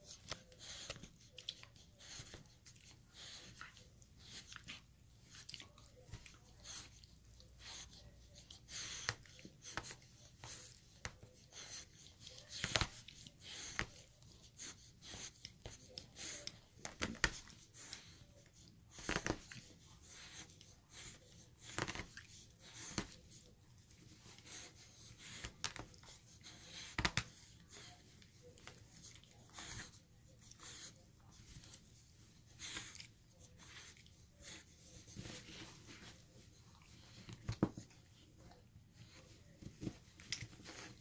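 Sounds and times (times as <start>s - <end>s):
dog chewing and tearing toy: 21.6s - 23.2s.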